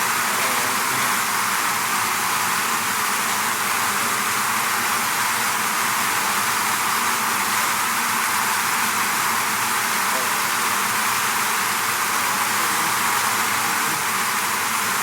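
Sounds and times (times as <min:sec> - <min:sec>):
bees buzzing: 0:09.4 - 0:15.0.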